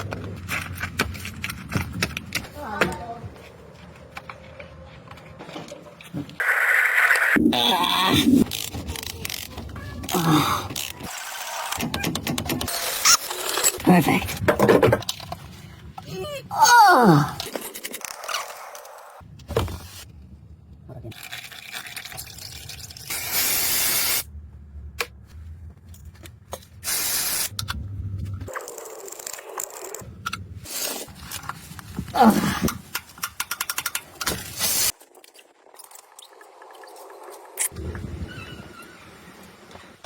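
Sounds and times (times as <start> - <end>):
spray hiss: 26.9 - 27.5.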